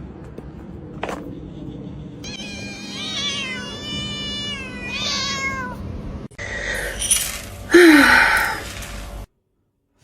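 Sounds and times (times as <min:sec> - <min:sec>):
cat meowing: 0:02.2 - 0:05.8.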